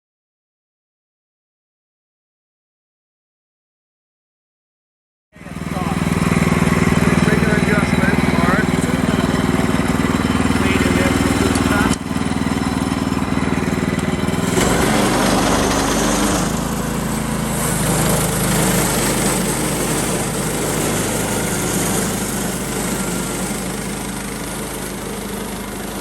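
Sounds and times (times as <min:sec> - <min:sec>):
band blade sawing log: 0:05.4 - 0:26.0
small gas engine running: 0:05.4 - 0:26.0.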